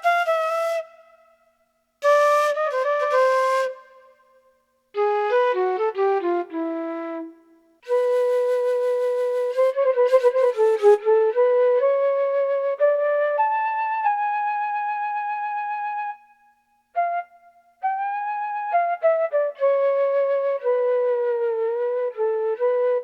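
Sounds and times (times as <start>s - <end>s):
keyboard flute melody: 0.0s - 1.4s, 2.0s - 4.2s, 5.0s - 16.4s.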